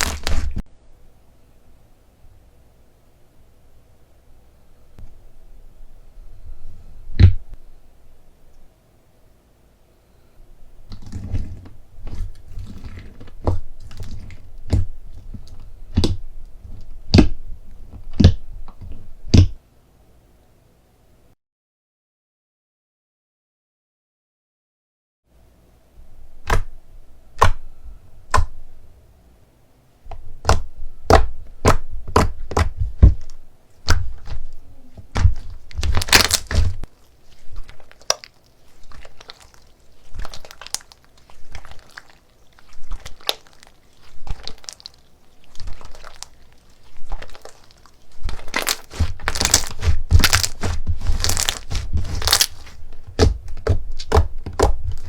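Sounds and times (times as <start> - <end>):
slime crackling and popping: 0.0 - 0.6, 30.4 - 55.0.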